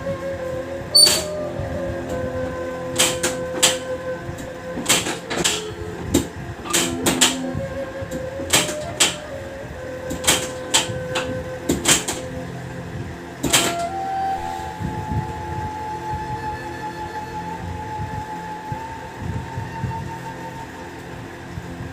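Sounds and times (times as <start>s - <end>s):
background music with held tones: 0.0s - 21.9s.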